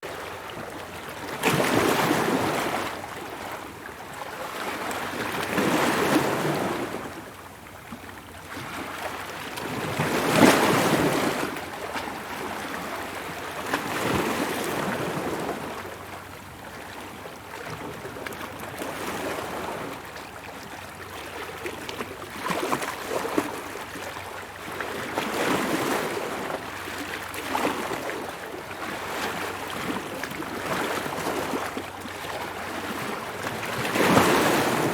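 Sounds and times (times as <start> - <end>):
ocean waves breaking: 0.1 - 7.2, 22.3 - 34.9.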